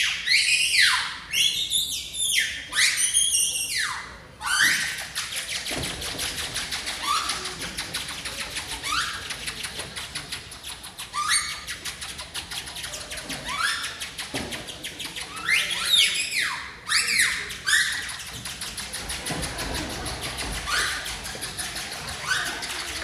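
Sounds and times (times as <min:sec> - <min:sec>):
fast even clicking: 0:05.0 - 0:15.6, 0:17.5 - 0:23.0.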